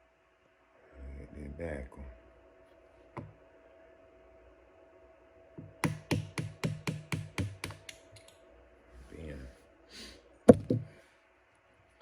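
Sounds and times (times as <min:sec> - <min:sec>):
hammer tapping pin punch: 0:05.6 - 0:08.3.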